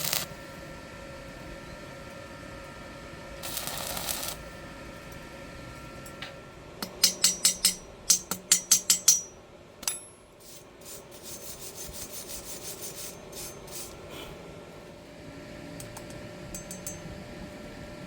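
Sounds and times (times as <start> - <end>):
metal file rasping: 10.4 - 14.0.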